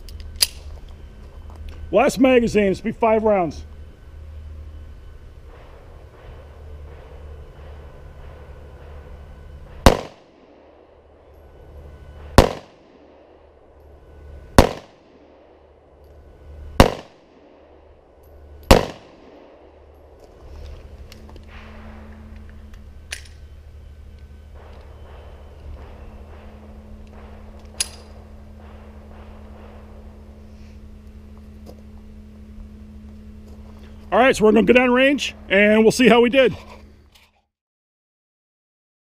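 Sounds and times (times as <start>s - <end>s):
pistol shots: 9.8s - 10.8s, 12.3s - 13.4s, 14.6s - 15.6s, 16.8s - 17.8s, 18.7s - 19.7s.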